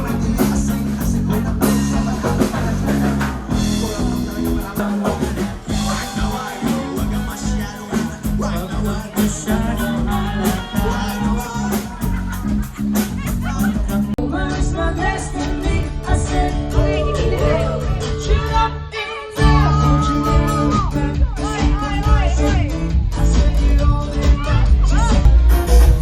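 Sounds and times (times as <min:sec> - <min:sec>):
steady drum beat: 0:00.0 - 0:18.7, 0:19.4 - 0:26.0
bass: 0:00.0 - 0:26.0
guitar: 0:00.0 - 0:26.0
upbeat pop music: 0:00.0 - 0:26.0.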